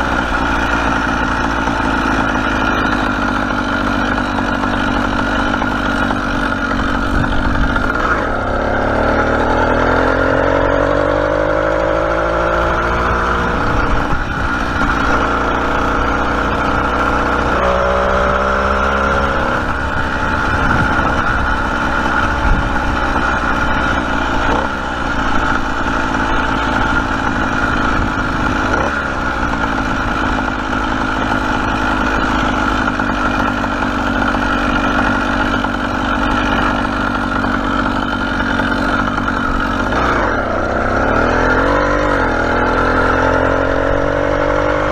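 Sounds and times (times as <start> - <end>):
small engine running: 0.0 - 44.9.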